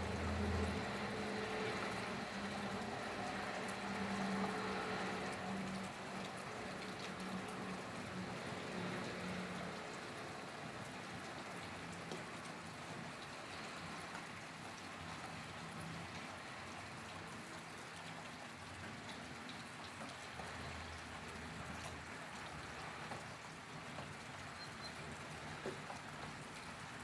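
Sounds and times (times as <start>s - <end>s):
steady rainfall: 0.0s - 27.0s.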